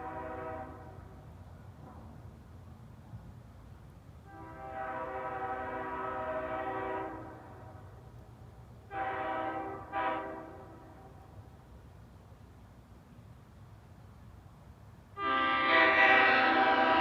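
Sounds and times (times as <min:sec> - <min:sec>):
locomotive air horn blasts: 0:00.0 - 0:01.1, 0:04.3 - 0:07.8, 0:08.9 - 0:11.2, 0:15.2 - 0:17.0.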